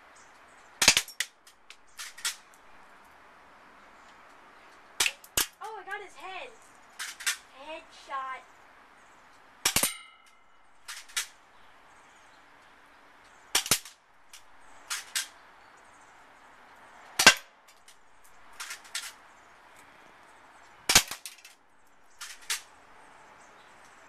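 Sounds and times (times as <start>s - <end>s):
airsoft pistol cracks: 0.8s - 2.5s, 5.0s - 5.6s, 9.6s - 11.4s, 13.5s - 14.0s, 17.2s - 17.6s, 20.9s - 21.6s
pistol cocking clicks: 0.8s - 2.5s, 9.6s - 11.4s, 13.5s - 15.4s.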